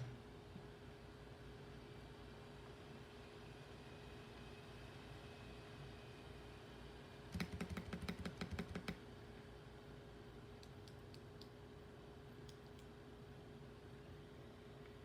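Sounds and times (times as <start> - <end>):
mechanical keyboard typing: 7.3 - 9.0.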